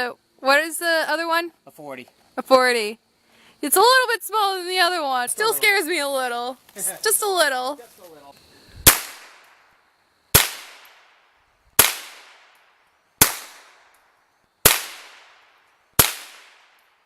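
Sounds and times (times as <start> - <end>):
gunshots with echo: 16.0 - 16.7.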